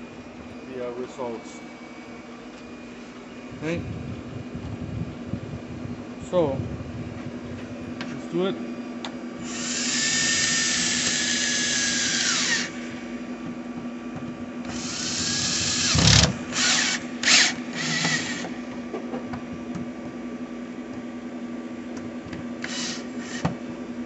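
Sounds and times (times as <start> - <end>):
power drill whining: 9.4 - 13.0, 14.6 - 18.6, 22.6 - 23.5.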